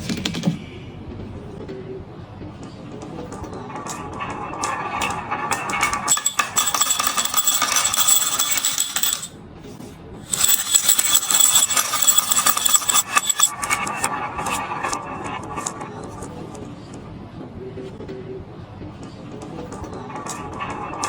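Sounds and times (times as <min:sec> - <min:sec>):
marbles rolling and clacking: 0:03.8 - 0:09.3, 0:10.3 - 0:15.8.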